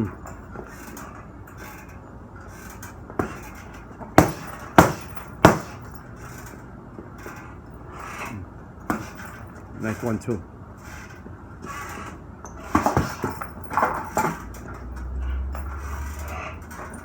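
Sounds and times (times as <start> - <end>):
punches on heavy bag: 4.2 - 6.0, 12.7 - 13.8.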